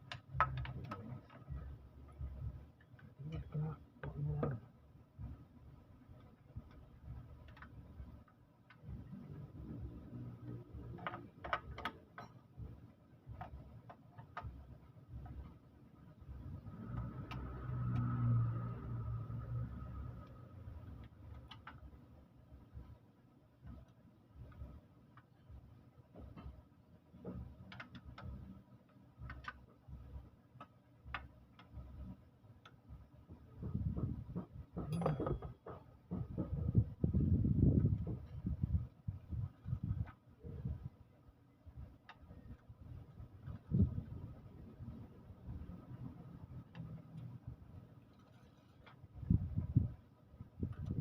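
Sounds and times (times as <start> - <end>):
irregular clicks and taps: 0.0 - 5.4, 6.1 - 15.7, 16.3 - 22.1, 23.6 - 37.1, 41.8 - 50.0
low steady hum: 0.0 - 51.0
dull low knocks: 33.3 - 40.0.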